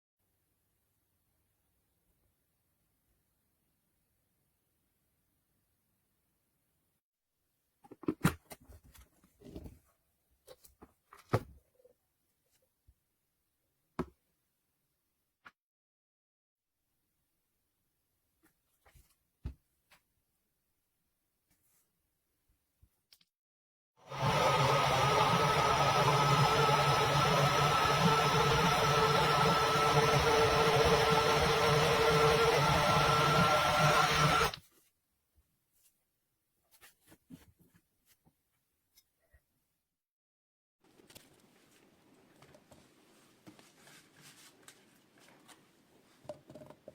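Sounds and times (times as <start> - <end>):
blender motor whining: 24.0 - 34.6.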